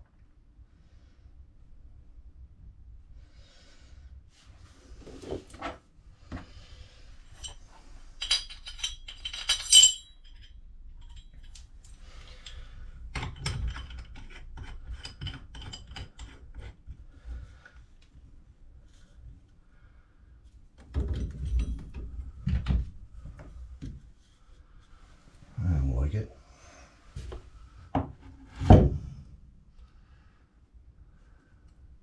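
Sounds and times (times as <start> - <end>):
metal parts clinking and rattling: 7.3 - 12.6.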